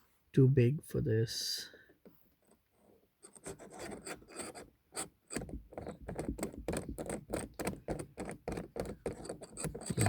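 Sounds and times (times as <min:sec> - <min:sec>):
metal knob clicking and scraping: 0:03.2 - 0:10.0.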